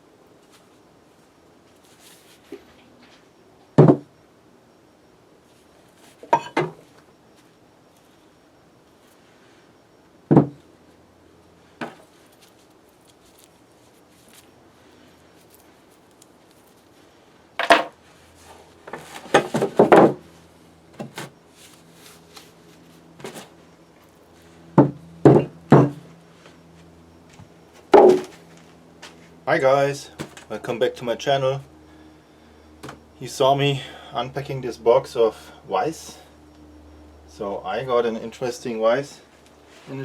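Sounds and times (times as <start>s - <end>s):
faint steady hum: 0.0s - 40.0s
heavy metal parts knocking on workbench: 10.3s - 10.6s, 17.6s - 18.0s, 18.9s - 20.2s, 24.8s - 26.0s, 28.0s - 28.4s.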